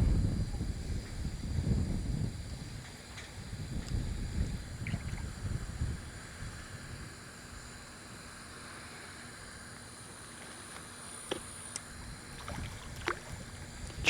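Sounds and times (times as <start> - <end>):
wind rumbling on microphone: 0.0 - 7.2, 11.9 - 14.0
faint steady hiss: 0.0 - 14.0.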